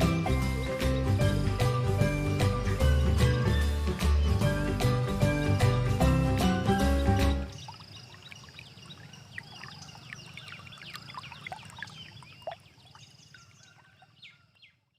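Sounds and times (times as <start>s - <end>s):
background music: 0.0s - 7.5s
small birds chirping and twittering: 0.0s - 14.9s.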